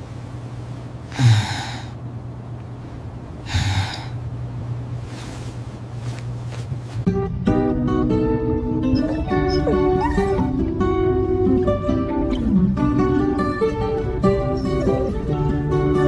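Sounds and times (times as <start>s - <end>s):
low hum: 0.0s - 16.0s
loud breathy huffs: 3.4s - 4.2s
guitar music: 7.0s - 16.0s.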